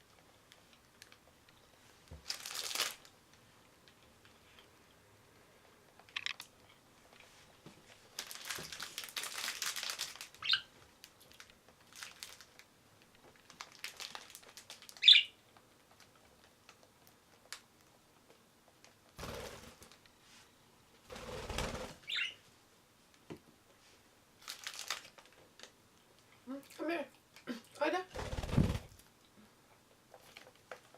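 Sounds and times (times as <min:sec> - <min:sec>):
rustling and crinkling: 0:00.0 - 0:04.8, 0:05.9 - 0:19.2, 0:23.1 - 0:26.2
budgerigars chirping: 0:15.0 - 0:15.3, 0:22.0 - 0:22.4.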